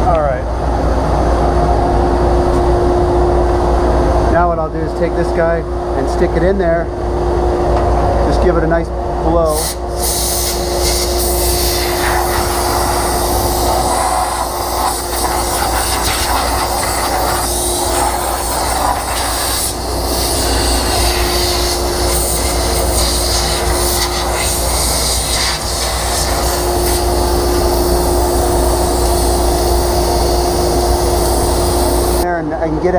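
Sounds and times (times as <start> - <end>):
vacuum humming: 6.9 - 32.3
compressed air hissing: 9.5 - 32.2.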